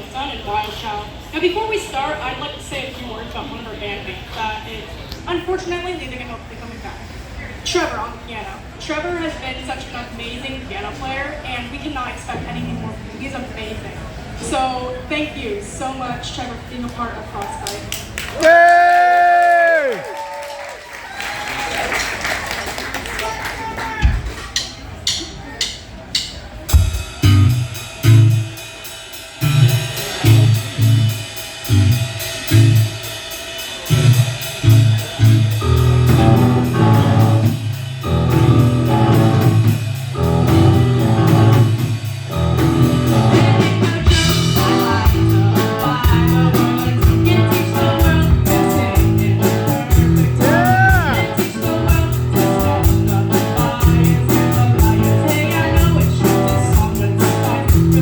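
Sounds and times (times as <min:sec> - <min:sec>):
low bass and guitar riff: 0:12.4 - 0:13.0, 0:26.7 - 0:28.6, 0:29.4 - 0:33.0, 0:33.9 - 0:58.0
cymbals: 0:24.6 - 0:58.0
rock band playing: 0:24.6 - 0:58.0.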